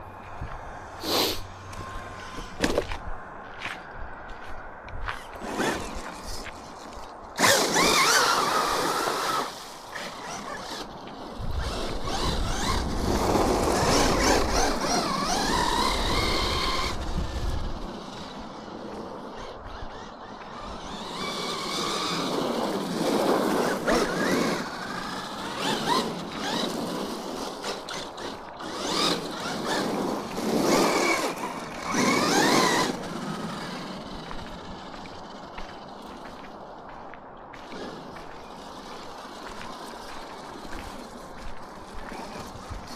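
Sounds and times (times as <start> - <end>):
rc car motor whining: 5.4 - 36.0.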